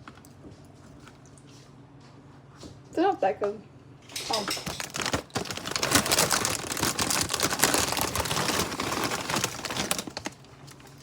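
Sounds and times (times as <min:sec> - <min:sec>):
plastic snack bag crinkling: 0:04.2 - 0:11.0.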